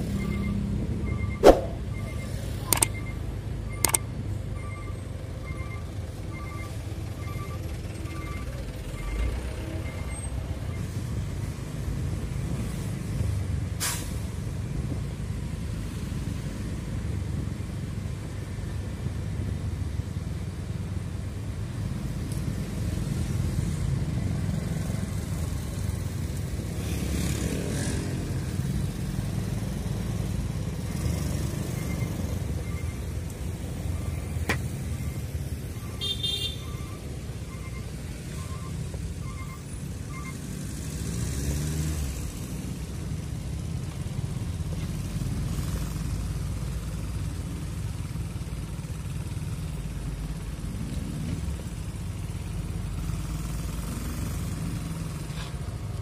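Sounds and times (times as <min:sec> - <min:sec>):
vehicle engine rumble: 0:00.0 - 0:56.0
short high beeps: 0:01.1 - 0:03.2.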